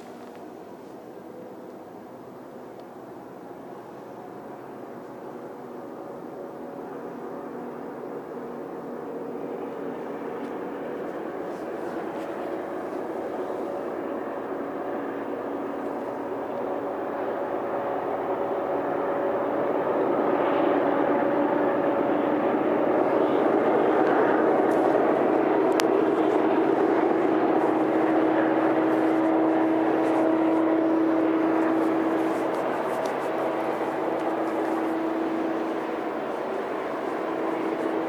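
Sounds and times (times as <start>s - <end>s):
train wheels rumbling on tracks: 21.9s - 38.0s.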